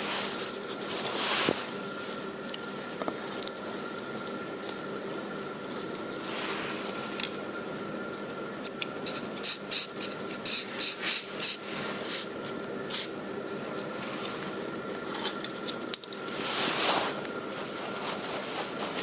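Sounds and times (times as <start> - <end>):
spray-paint can hissing: 9.1 - 12.3.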